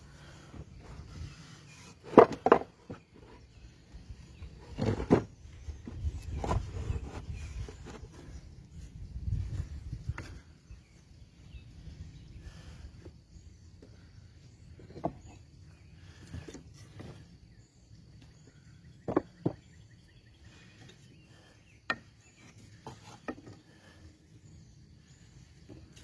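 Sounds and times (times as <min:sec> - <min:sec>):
faint insects chirping: 0:00.0 - 0:26.0
knocks of wood and tools: 0:02.0 - 0:03.0, 0:19.0 - 0:19.6, 0:21.9 - 0:23.6.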